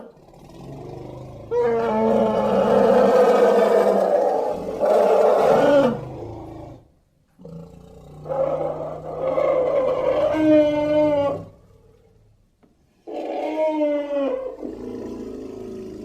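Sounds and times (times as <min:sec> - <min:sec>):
creature roaring: 0:00.0 - 0:06.8.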